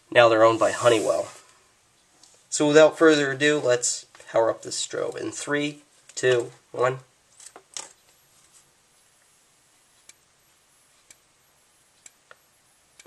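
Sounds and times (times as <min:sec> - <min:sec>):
faint high-pitched whine: 0:00.0 - 0:13.0
strobe ticking: 0:08.9 - 0:13.0.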